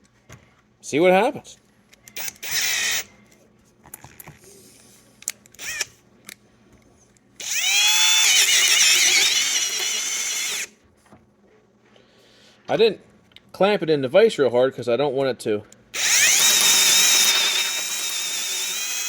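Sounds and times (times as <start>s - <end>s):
electric drill boring into metal: 2.2s - 3.1s, 5.6s - 5.9s, 7.4s - 10.7s, 16.0s - 19.0s.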